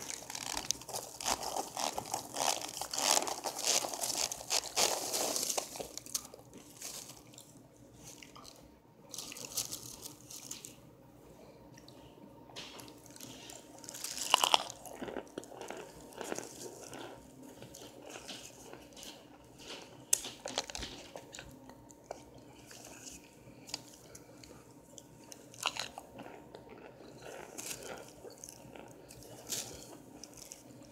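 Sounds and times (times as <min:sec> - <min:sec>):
crisp crunching bites: 0:00.0 - 0:07.4, 0:13.8 - 0:17.0
quiet chewing: 0:00.0 - 0:10.8, 0:11.7 - 0:30.9.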